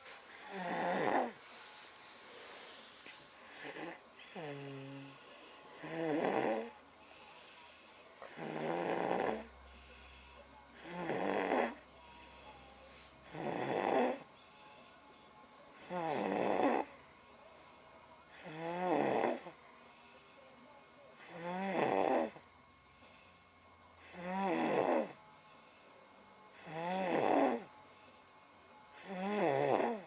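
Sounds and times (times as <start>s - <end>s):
child snoring: 0.0s - 1.4s, 2.4s - 14.9s, 15.8s - 17.6s, 18.3s - 19.6s, 21.2s - 23.4s, 24.0s - 25.8s, 26.6s - 28.0s, 29.0s - 30.0s
quiet breathing: 0.0s - 30.0s.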